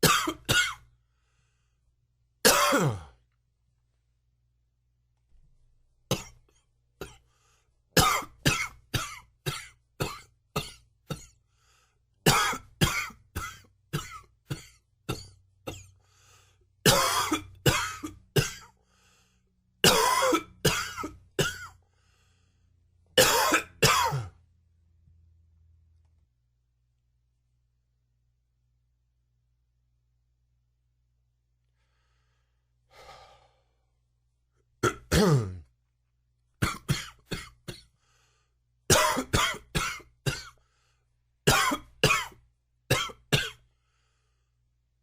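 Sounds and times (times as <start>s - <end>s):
man coughing: 0.0s - 0.8s, 2.4s - 3.2s, 8.0s - 11.4s, 12.3s - 15.9s, 16.9s - 18.7s, 19.8s - 21.8s, 23.2s - 24.4s, 34.8s - 35.7s, 36.6s - 37.9s, 38.9s - 40.6s, 41.5s - 43.6s.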